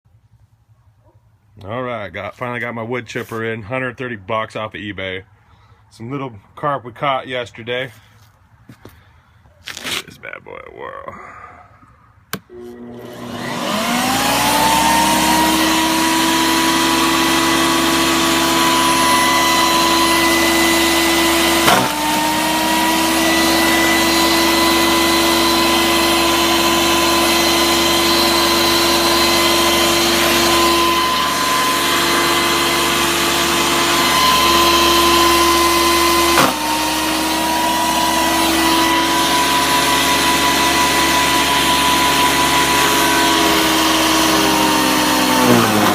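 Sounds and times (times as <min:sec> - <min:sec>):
wood chipper whining: 0:12.3 - 0:45.9
chipper knock chopping fish: 0:21.6 - 0:22.1, 0:36.4 - 0:36.6.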